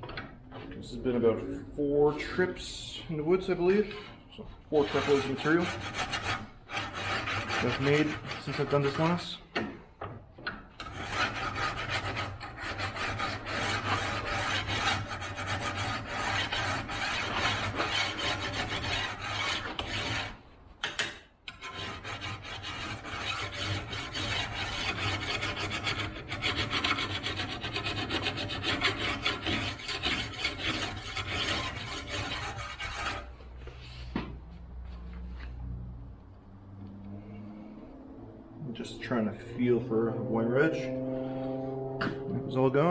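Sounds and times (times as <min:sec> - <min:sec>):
file scraping on steel: 0:03.7 - 0:09.4, 0:10.7 - 0:33.6.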